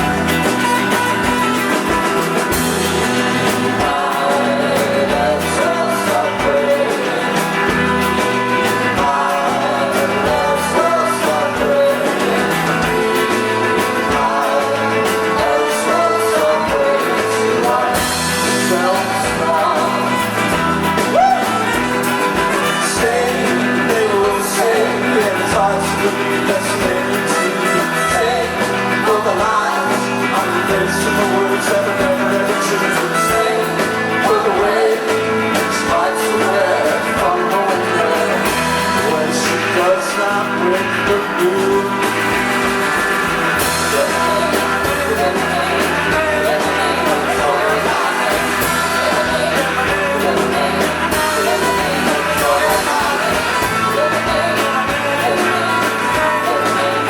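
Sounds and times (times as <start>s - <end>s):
person singing: 0.0s - 57.0s
rock band playing live: 0.0s - 57.0s.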